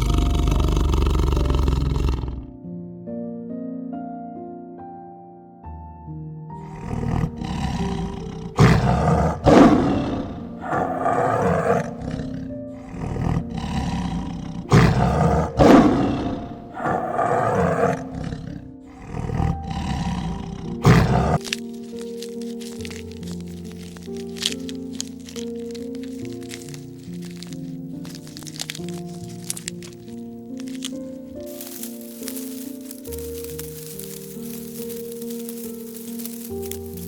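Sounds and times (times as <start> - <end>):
large animal roaring: 0.0 - 2.6, 6.6 - 21.6.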